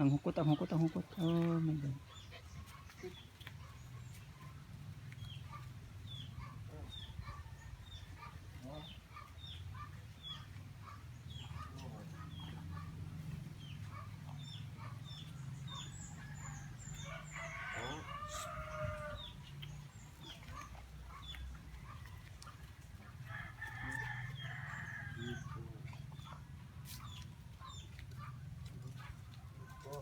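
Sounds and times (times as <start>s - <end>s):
small birds chirping: 0.0s - 22.2s
rooster crowing: 16.4s - 19.2s.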